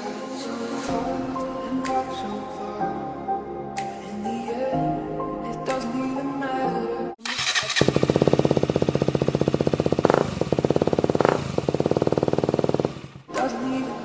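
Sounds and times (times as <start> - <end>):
motorcycle engine idling: 7.3 - 13.3.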